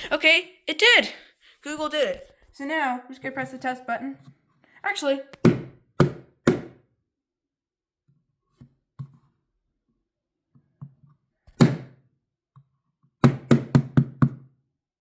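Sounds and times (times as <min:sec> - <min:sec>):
knocks on hard surface: 0:05.4 - 0:06.8, 0:13.2 - 0:14.4.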